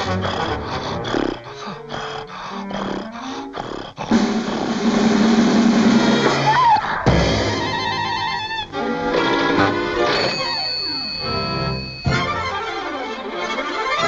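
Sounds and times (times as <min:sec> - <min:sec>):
loud animal roar: 0:00.0 - 0:05.2
orchestral cartoon music: 0:04.7 - 0:14.0.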